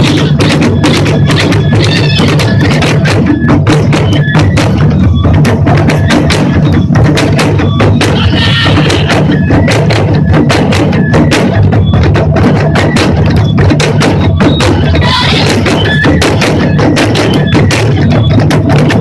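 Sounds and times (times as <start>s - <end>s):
taiko drums played fast: 0.0s - 19.0s.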